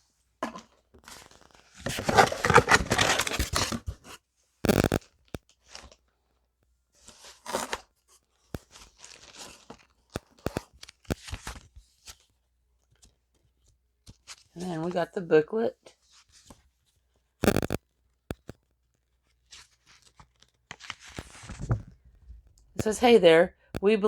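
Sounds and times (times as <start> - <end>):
light clicks: 4.7 - 5.0, 17.4 - 18.6.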